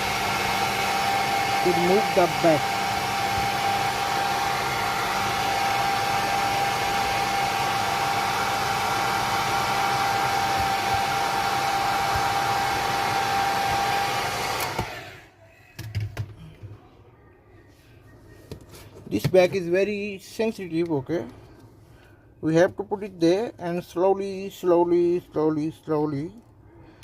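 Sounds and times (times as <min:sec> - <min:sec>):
hot-air blower whining: 0:00.0 - 0:15.3.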